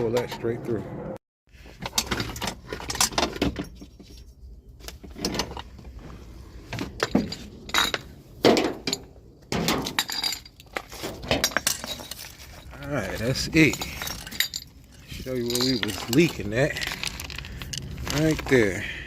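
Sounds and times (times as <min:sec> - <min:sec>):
metal pipe clinking and scraping: 0:06.7 - 0:18.6.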